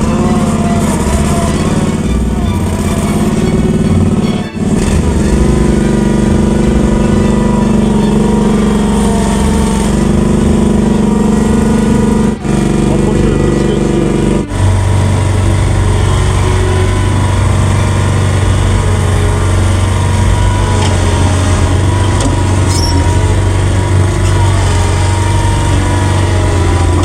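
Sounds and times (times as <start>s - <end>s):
engine running steadily: 0.0s - 27.0s.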